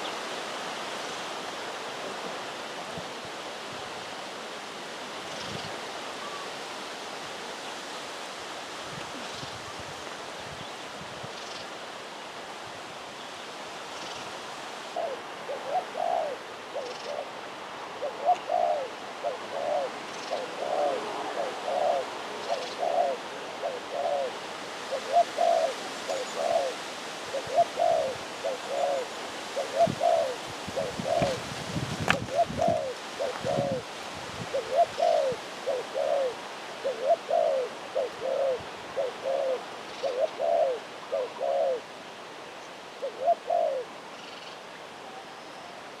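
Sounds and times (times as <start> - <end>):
dove cooing: 14.9 - 31.5, 32.1 - 41.9, 43.0 - 44.0.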